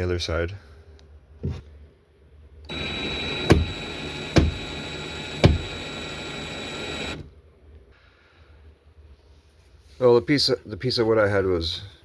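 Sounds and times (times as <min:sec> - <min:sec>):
sharp knocks: 0:02.7 - 0:04.8, 0:05.4 - 0:05.8
power drill running: 0:02.7 - 0:07.3.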